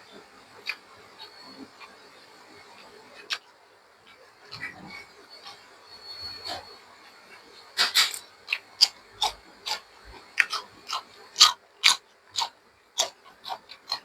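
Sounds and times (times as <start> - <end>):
person chewing food crunching: 7.8 - 14.0.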